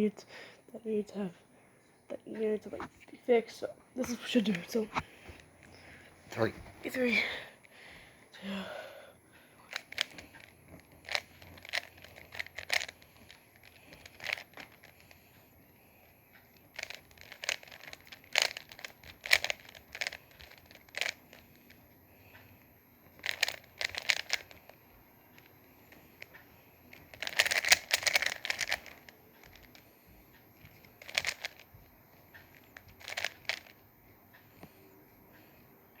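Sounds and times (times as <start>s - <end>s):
puzzle cube plastic clicks: 9.7s - 15.3s, 16.5s - 21.8s, 23.1s - 24.8s, 25.4s - 29.9s, 30.6s - 33.8s.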